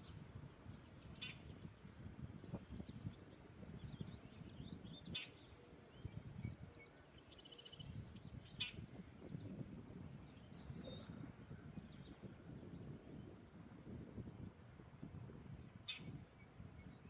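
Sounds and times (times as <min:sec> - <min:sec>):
low wind rumble: 0:00.0 - 0:17.0
birds chirping: 0:00.9 - 0:13.4.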